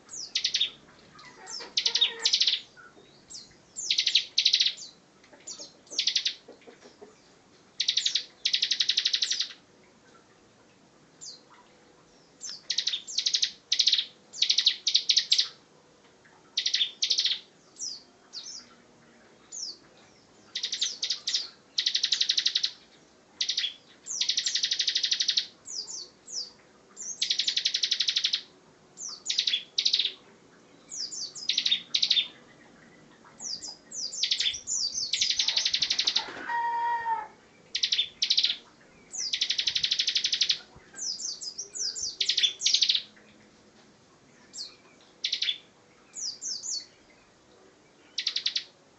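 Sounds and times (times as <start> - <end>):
bird singing rapid trills: 0.1 - 6.4, 7.8 - 9.6, 12.2 - 15.6, 16.6 - 18.8, 19.4 - 30.2, 30.8 - 36.3, 37.6 - 43.2, 44.4 - 47.4, 48.0 - 48.7
sharp bird chirps: 20.5 - 22.8, 23.4 - 25.9, 33.4 - 36.3, 37.7 - 38.6, 39.2 - 43.1, 44.6 - 45.6, 48.2 - 48.7.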